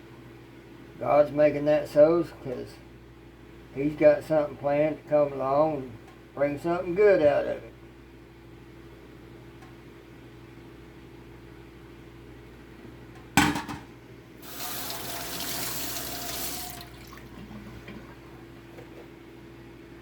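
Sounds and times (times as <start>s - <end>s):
sink sprayer running water: 14.4s - 18.2s.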